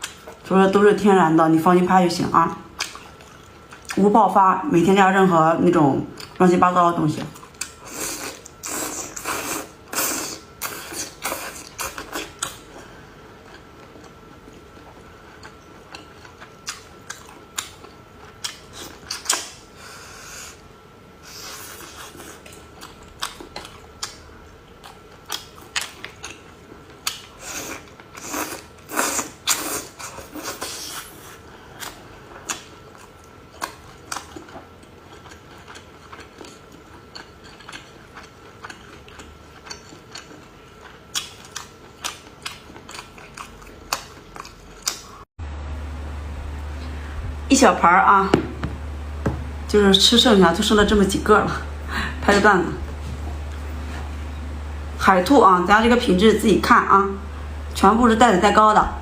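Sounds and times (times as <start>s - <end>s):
wet chewing: 2.8s - 4.0s, 7.3s - 19.5s, 21.3s - 45.2s.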